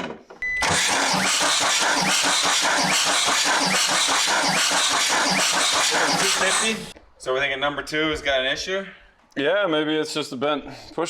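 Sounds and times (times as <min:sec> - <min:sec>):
diesel engine cranking: 0:00.6 - 0:07.0.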